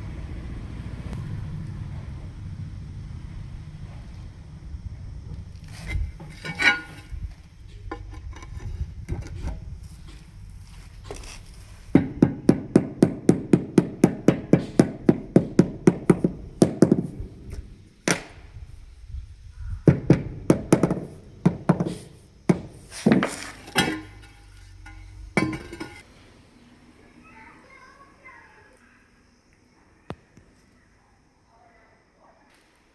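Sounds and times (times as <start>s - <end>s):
tile being tapped into mortar: 12.0s - 18.3s, 19.8s - 24.0s.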